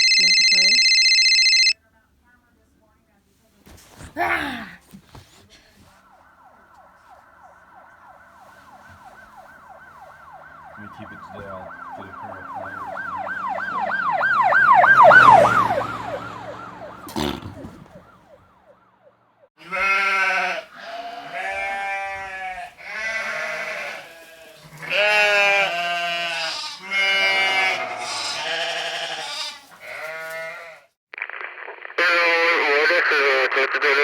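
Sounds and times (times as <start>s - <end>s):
swooping siren sound effect: 5.8s - 19.5s
wavering sheep-like bleats: 19.6s - 30.9s.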